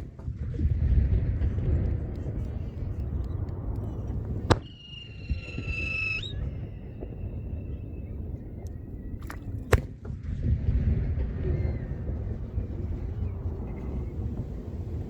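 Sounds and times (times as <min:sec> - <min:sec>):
firework bangs: 0:00.0 - 0:15.0
steady low rumble: 0:00.0 - 0:15.0
high firework whistle: 0:02.3 - 0:09.6.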